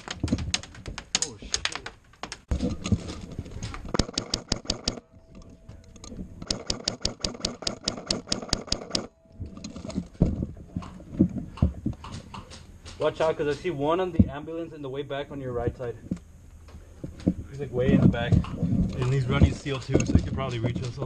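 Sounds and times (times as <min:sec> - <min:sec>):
airsoft gun firing full-auto: 0:06.4 - 0:09.1.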